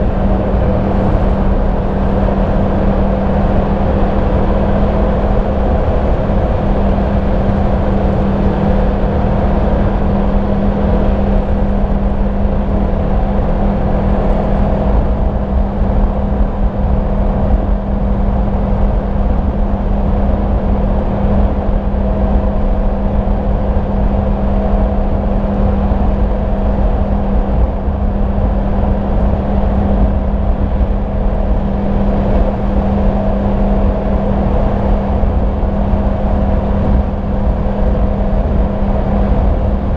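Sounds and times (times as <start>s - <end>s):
motorcycle engine cruising: 0.0s - 15.3s
wind rush on microphone: 0.0s - 39.9s.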